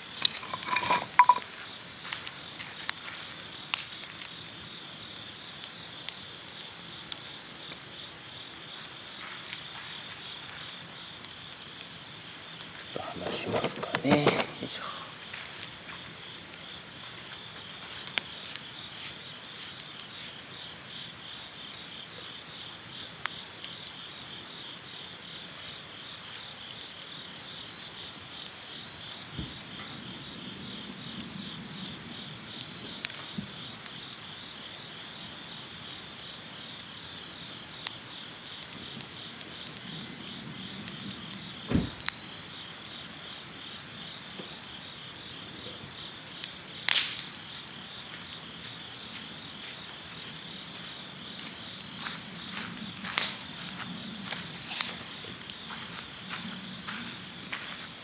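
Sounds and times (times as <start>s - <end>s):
campfire crackling and popping: 0.0s - 58.0s
insects chirping: 0.0s - 58.0s.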